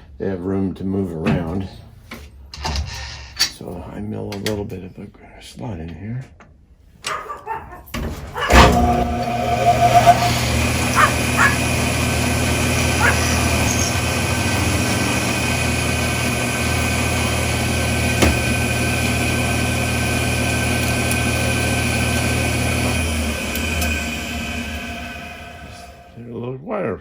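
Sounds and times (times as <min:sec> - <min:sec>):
cutter squealing: 0:07.1 - 0:26.2
milling machine cutting: 0:08.2 - 0:26.2.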